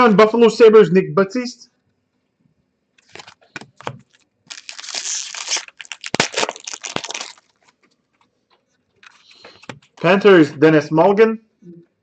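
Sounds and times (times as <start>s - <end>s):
wrapper crackling: 3.0s - 7.8s
wrapper tearing: 3.0s - 7.8s.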